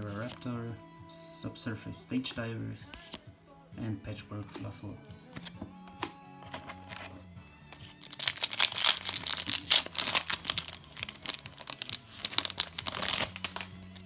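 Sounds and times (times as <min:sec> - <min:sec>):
foil wrapper tearing and crinkling: 0:07.8 - 0:13.9.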